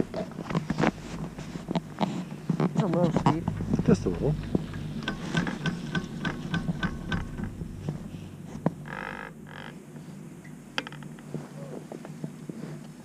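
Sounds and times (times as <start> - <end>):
rhythmic mechanical clicks: 0.0 - 9.8
steady low hum: 0.0 - 13.0.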